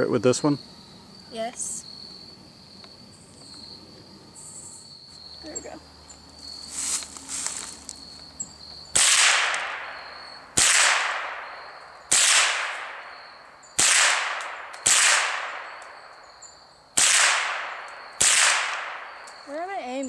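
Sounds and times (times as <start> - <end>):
crickets chirping: 0.0 - 20.0
rifle shots: 8.9 - 13.1, 13.8 - 15.8, 17.0 - 19.1.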